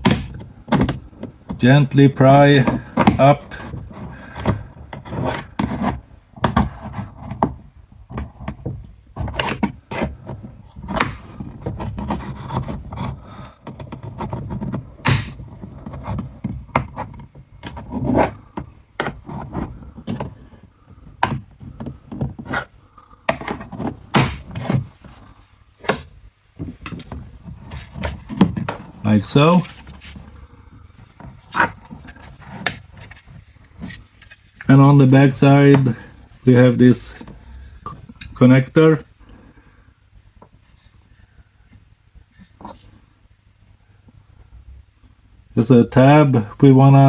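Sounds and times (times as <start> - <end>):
sharp plastic clicks and knocks: 0.0 - 1.6, 13.6 - 18.3
tool scraping plastic trim: 0.0 - 38.4.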